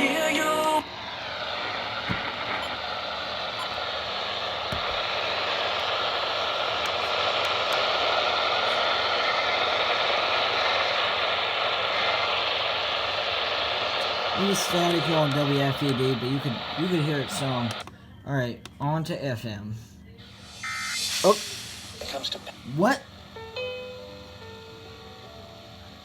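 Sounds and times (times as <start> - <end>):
radio static hiss: 0.0 - 17.8, 20.2 - 23.4
faint whistling tone: 20.0 - 22.0.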